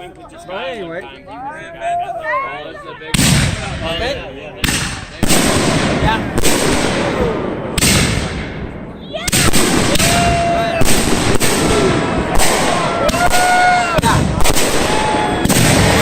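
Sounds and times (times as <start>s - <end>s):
fireworks bangs: 3.1s - 4.0s, 4.6s - 16.0s.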